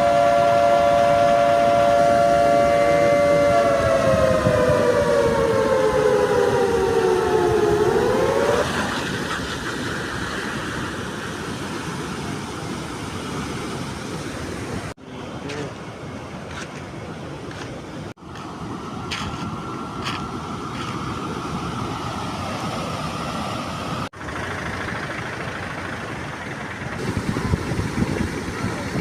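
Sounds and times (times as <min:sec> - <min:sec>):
two-note horn sliding down: 0:00.0 - 0:08.7
steady rushing noise: 0:01.1 - 0:29.0.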